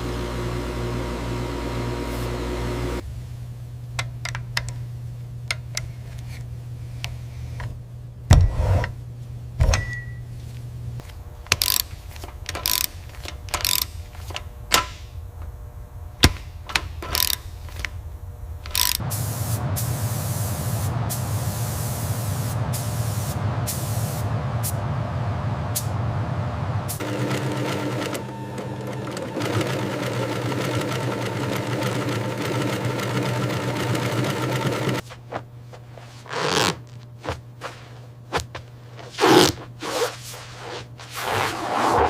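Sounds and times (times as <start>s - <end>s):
low hum: 0.0s - 29.0s
machine running loudly: 11.2s - 35.0s.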